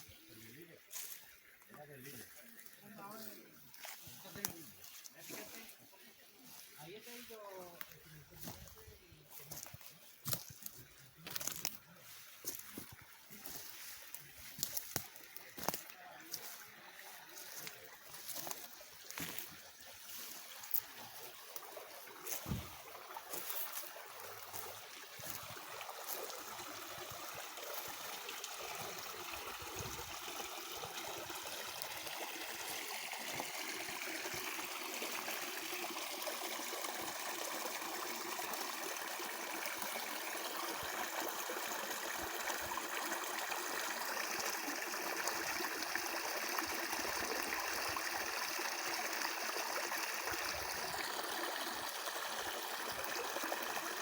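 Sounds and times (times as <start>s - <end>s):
stream flowing: 0.0s - 54.0s.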